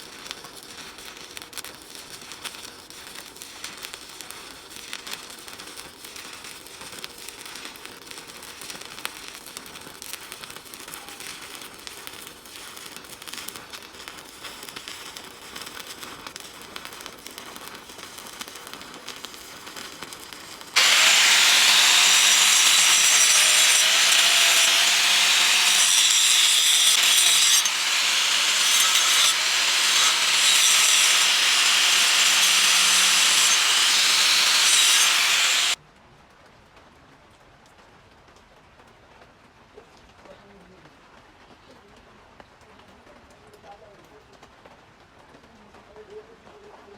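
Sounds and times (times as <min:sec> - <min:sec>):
welding arc crackling: 0:00.0 - 0:35.8
harsh loud hiss: 0:13.6 - 0:35.8.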